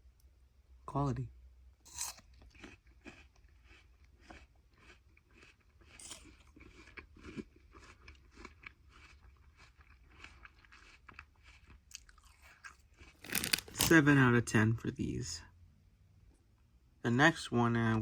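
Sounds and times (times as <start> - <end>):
crunching and chewing apple: 1.9 - 14.1.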